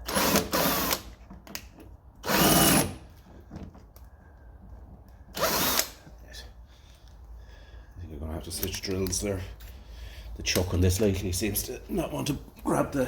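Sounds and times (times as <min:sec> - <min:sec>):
power drill bursts: 0:00.0 - 0:01.1, 0:02.2 - 0:03.1, 0:05.3 - 0:06.0.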